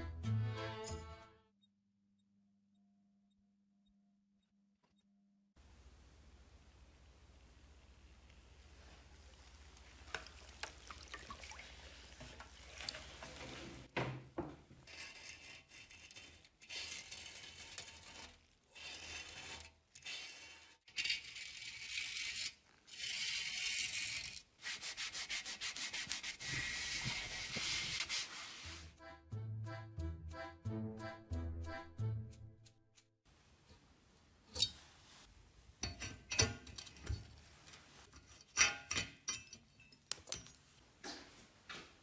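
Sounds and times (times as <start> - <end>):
sandpaper rubbing: 15.0 - 29.0.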